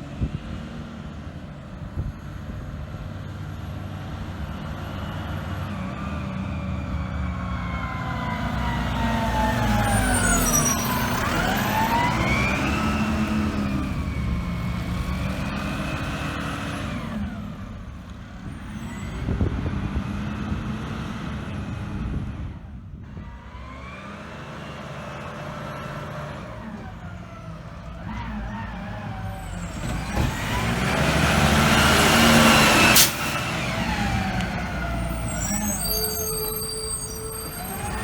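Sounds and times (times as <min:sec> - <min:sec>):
truck engine rumble: 0:00.0 - 0:38.0
truck brakes squealing: 0:05.0 - 0:17.2, 0:18.4 - 0:19.5, 0:26.5 - 0:38.0
air brake hiss: 0:32.9 - 0:33.5.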